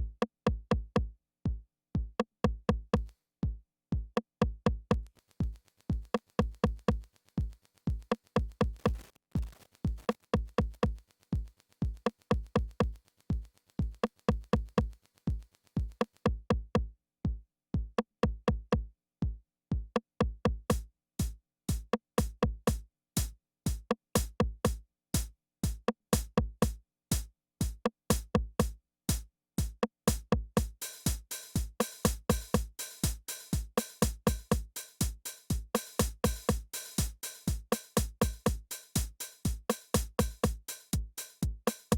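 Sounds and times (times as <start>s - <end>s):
drum machine beat: 4.0s - 16.8s, 20.2s - 41.9s
hi-hat: 22.7s - 41.9s.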